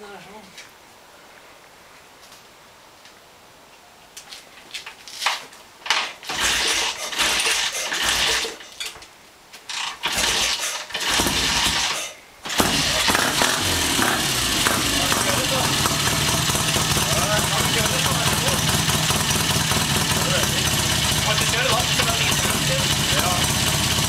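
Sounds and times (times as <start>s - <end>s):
motorcycle engine kick-started: 6.2s - 8.7s, 9.7s - 24.0s.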